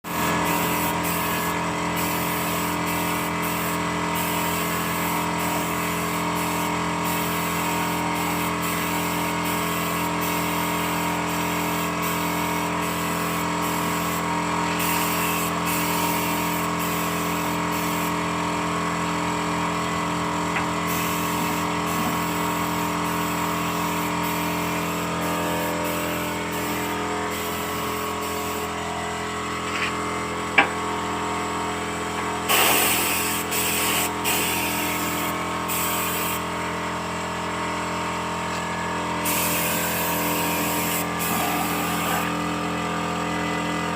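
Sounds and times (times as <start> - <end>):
machine humming: 19.5 - 29.6, 38.1 - 43.9.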